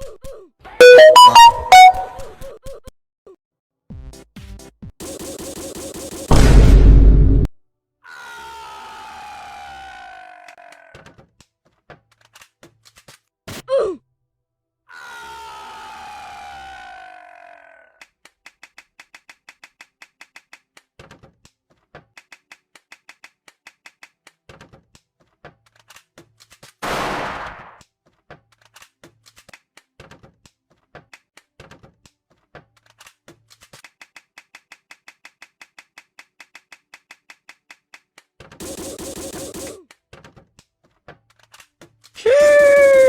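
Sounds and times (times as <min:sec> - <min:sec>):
fast sharp clicks: 0:38.6 - 0:39.8.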